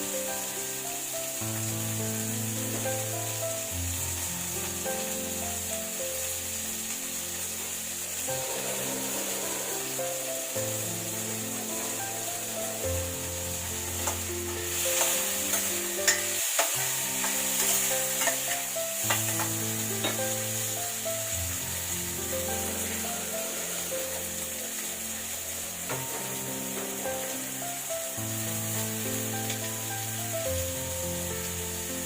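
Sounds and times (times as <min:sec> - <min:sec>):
food sizzling in oil: 0:00.0 - 0:32.0
soft background music: 0:00.0 - 0:32.0
spatula scraping a pan: 0:08.2 - 0:20.8.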